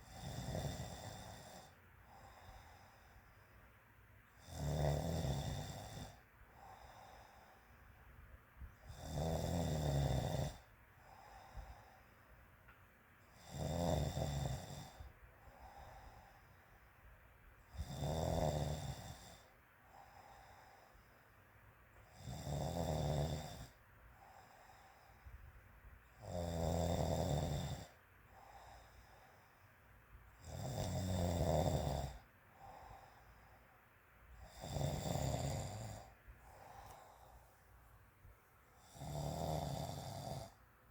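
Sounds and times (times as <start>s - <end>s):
woman snoring: 0.0s - 3.1s, 4.4s - 7.5s, 8.8s - 12.0s, 13.3s - 16.4s, 17.7s - 20.9s, 22.1s - 25.2s, 26.2s - 29.2s, 30.4s - 33.2s, 34.4s - 37.3s, 38.8s - 40.6s
quiet breaths: 0.0s - 40.9s.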